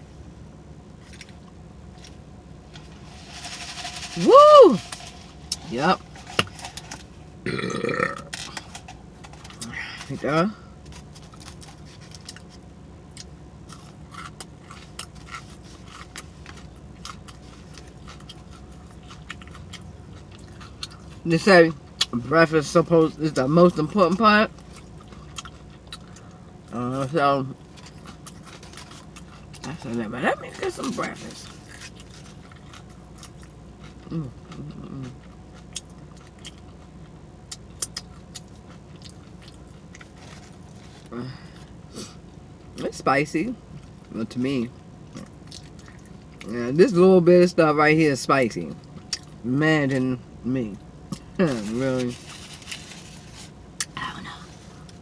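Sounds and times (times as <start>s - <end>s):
steady low hum: 0.0s - 55.0s
mouth chewing and lip-smacking: 10.9s - 21.2s, 24.6s - 26.4s, 30.7s - 41.7s, 45.1s - 46.5s, 48.8s - 49.4s.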